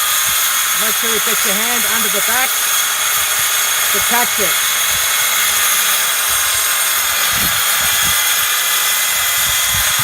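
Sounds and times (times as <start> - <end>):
electric saw cutting wood: 0.0 - 10.0.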